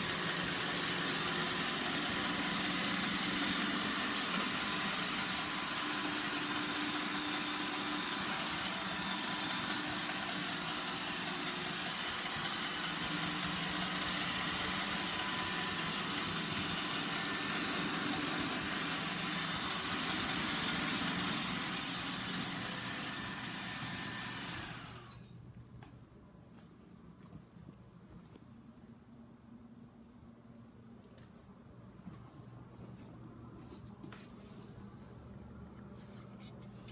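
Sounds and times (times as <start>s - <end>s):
robot vacuum running: 0.0s - 25.3s.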